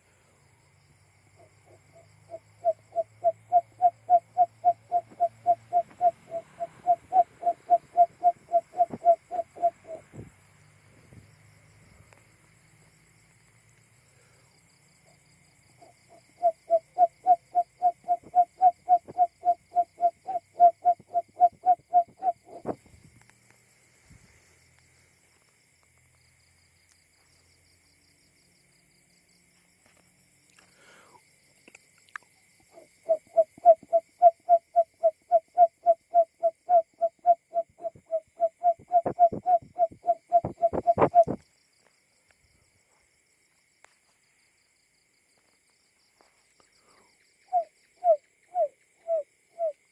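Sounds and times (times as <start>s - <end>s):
bird low hoots: 1.4s - 10.2s, 15.8s - 22.8s, 32.7s - 41.4s, 47.4s - 49.8s.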